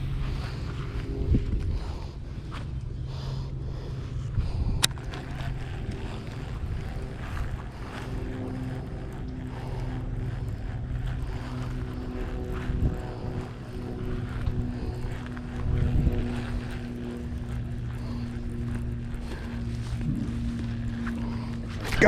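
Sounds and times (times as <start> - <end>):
faint steady tones: 0.0 - 22.0
low motor drone: 0.0 - 22.0.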